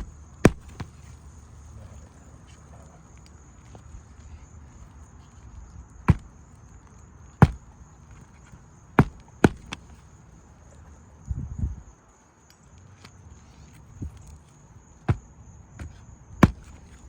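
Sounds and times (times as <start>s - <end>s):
hammer striking nails: 0.0s - 0.9s, 7.4s - 7.7s, 9.0s - 9.8s, 16.4s - 16.8s.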